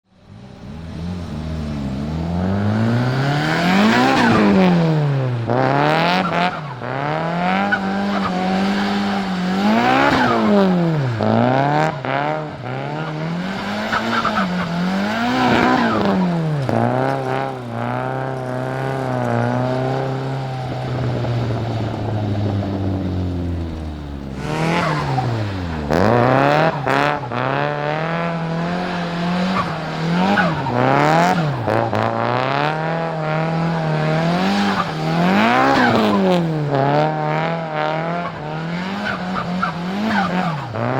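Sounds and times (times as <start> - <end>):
turbocharged car engine revving: 0.1 - 40.9
tyre squeal: 20.1 - 27.0.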